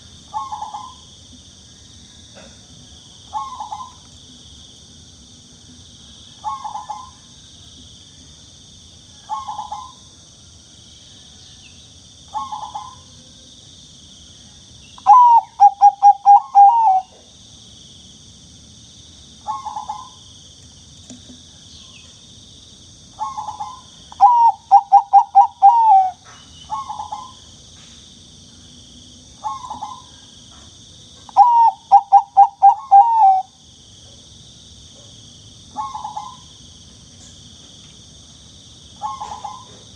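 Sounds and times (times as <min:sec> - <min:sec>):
high insect trill: 0:00.0 - 0:39.9
dove cooing: 0:15.0 - 0:17.2, 0:23.2 - 0:27.4, 0:31.3 - 0:33.5, 0:35.8 - 0:36.4, 0:39.0 - 0:39.9.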